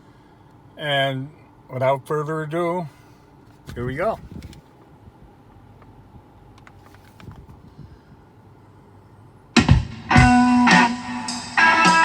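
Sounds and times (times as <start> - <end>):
strummed guitar chords: 9.6 - 12.0.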